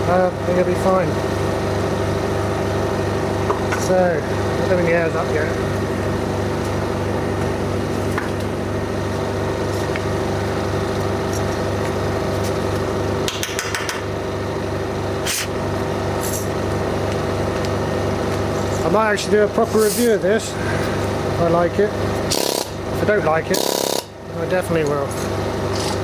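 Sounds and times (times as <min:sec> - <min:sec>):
air compressor running: 0:00.0 - 0:26.0
diesel generator running: 0:00.0 - 0:26.0
sharp clicks and knocks: 0:13.2 - 0:14.1.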